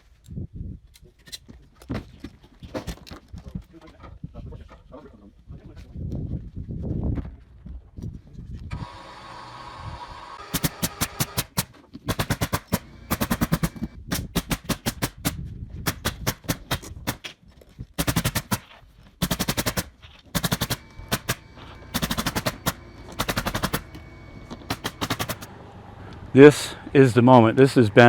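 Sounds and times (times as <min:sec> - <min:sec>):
power tool rapid mechanical impacts: 0:08.7 - 0:17.3, 0:18.0 - 0:25.5.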